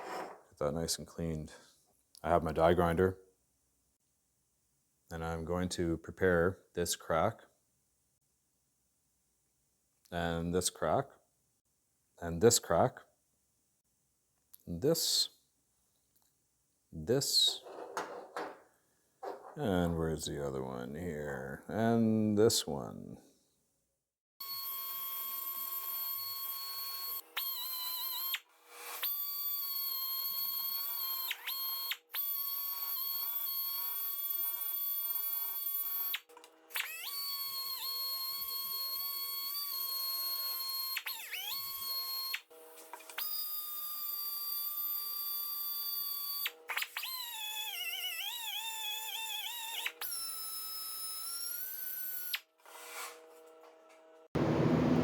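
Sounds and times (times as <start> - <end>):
die grinder whining: 24.5 - 53.8
loud rushing noise: 54.4 - 55.0.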